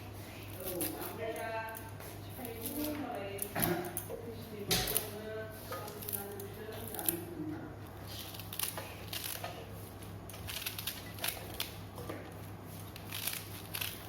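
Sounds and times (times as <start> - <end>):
steady low hum: 0.0 - 14.0
kitchen items clicking and tapping: 1.3 - 7.2.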